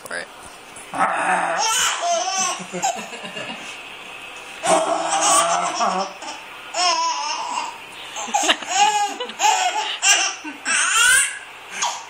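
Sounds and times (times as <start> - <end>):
small child laughing: 1.6 - 3.6, 4.7 - 12.0.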